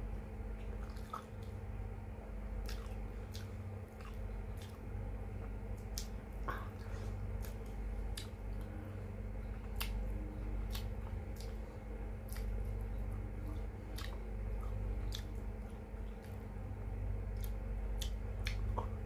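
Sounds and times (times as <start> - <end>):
steady low hum: 0.0 - 19.0
person chewing: 0.6 - 1.6, 2.6 - 4.8, 5.4 - 16.6, 17.3 - 19.0
wet mouth smacks: 0.8 - 1.5.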